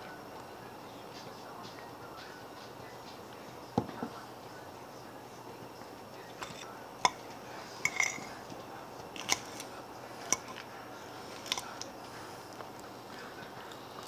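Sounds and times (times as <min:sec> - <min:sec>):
utensil scraping against plate: 0:06.3 - 0:12.4.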